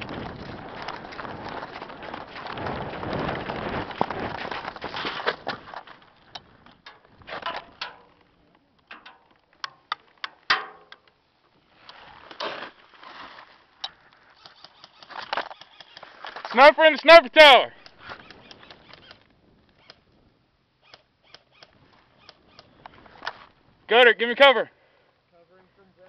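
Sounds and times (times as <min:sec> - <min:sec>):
rustling and scuffing: 0:00.0 - 0:06.2, 0:11.5 - 0:14.5.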